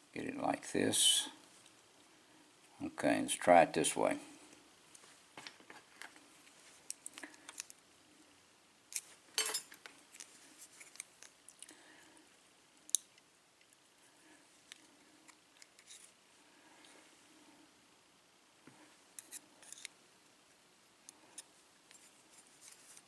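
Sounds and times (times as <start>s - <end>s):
rattling of lock parts: 8.9s - 10.2s.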